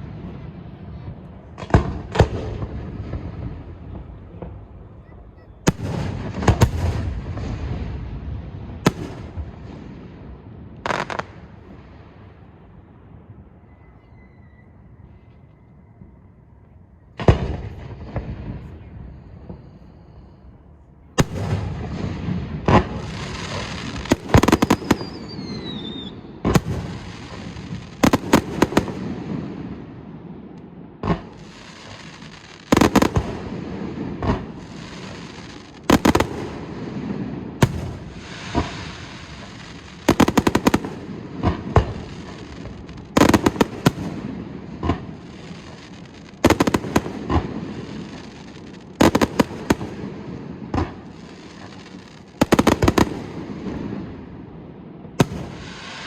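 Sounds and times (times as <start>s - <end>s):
fireworks crackling: 0.0s - 12.6s, 21.2s - 56.0s
falling firework whistle: 13.6s - 17.2s, 23.3s - 26.2s.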